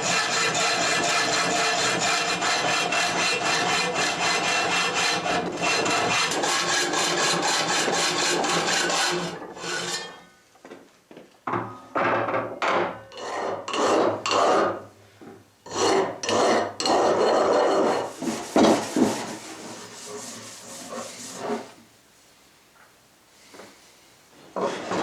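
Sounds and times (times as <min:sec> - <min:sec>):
hand file strokes: 0:00.0 - 0:10.1, 0:15.7 - 0:21.8.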